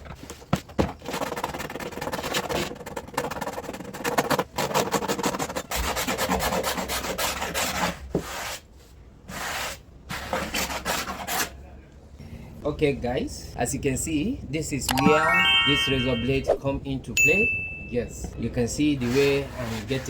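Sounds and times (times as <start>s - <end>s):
blade scraping a panel: 19.0s - 20.0s.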